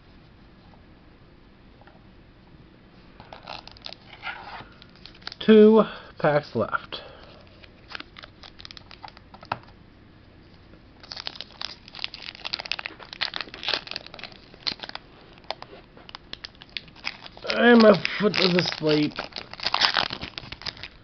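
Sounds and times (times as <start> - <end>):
foil wrapper crinkling: 3.2 - 5.4, 7.6 - 9.3, 11.0 - 21.0.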